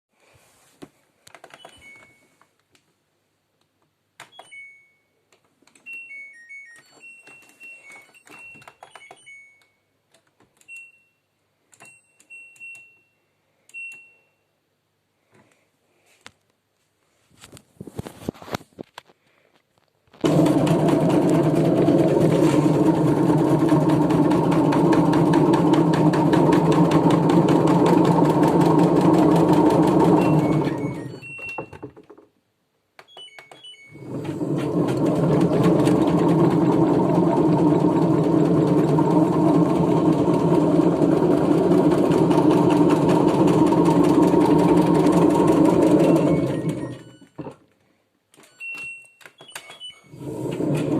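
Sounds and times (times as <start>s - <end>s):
washing machine spinning and rattling: 20.2s - 32.2s, 33.9s - 47.5s, 50.1s - 50.9s.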